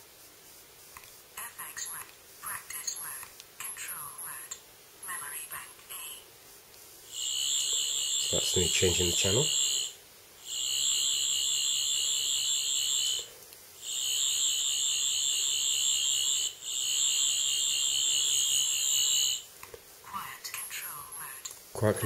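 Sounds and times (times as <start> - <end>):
high-pitched electronic buzzing whir: 7.1 - 19.5.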